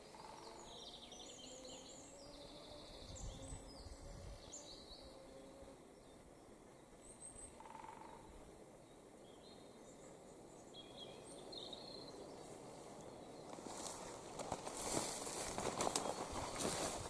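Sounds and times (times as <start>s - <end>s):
bird chirps: 8.9s - 12.5s
rustling crackling noise: 12.4s - 17.0s.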